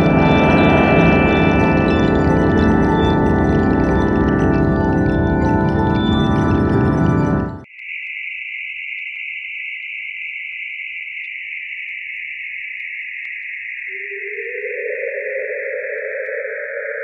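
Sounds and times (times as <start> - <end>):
high hissing tone sinking: 0.0 - 7.6
low tone gliding upward: 0.0 - 7.6
ringing chord: 0.0 - 7.6.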